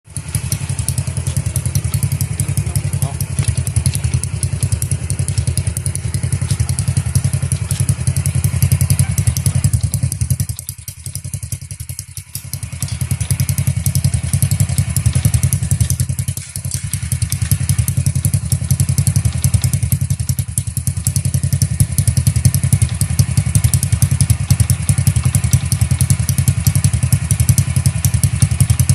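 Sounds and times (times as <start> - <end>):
motorcycle engine popping exhaust: 0.0 - 28.9.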